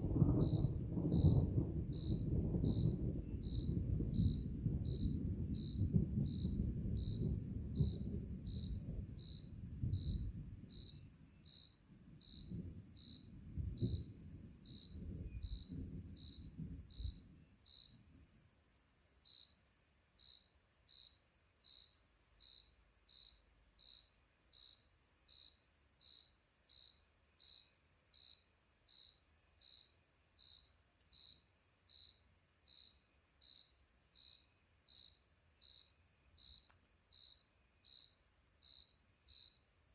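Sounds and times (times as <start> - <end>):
distant thunder rumbling: 0.0 - 18.1
insect chirping: 0.0 - 18.1, 18.7 - 39.9.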